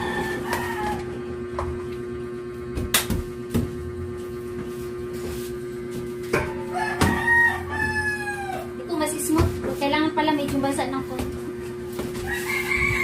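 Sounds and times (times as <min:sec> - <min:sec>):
rooster crowing: 0:00.0 - 0:01.3, 0:06.4 - 0:08.8, 0:12.2 - 0:13.0
steady hum: 0:00.0 - 0:13.0.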